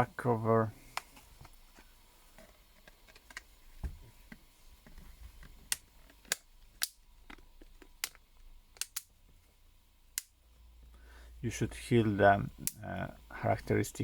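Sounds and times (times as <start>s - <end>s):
plastic clips snapping into place: 8.8s - 9.1s.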